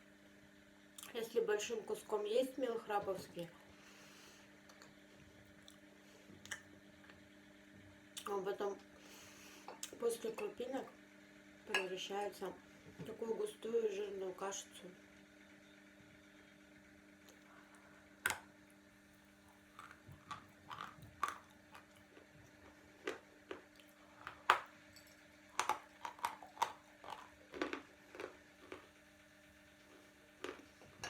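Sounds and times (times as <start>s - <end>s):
chalk being chewed: 19.5s - 24.4s, 25.6s - 28.9s, 29.9s - 30.7s.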